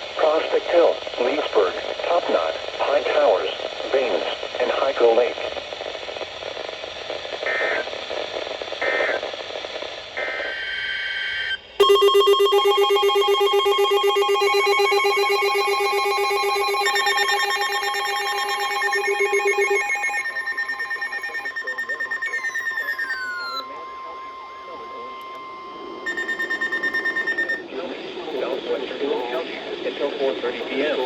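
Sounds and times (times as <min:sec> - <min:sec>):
buzzy data bursts: 0:10.2 - 0:27.7
loud steady alert tone: 0:11.8 - 0:27.7.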